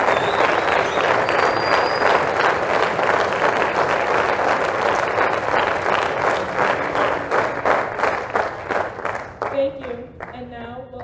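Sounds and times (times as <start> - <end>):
audience applauding: 0.0 - 10.4.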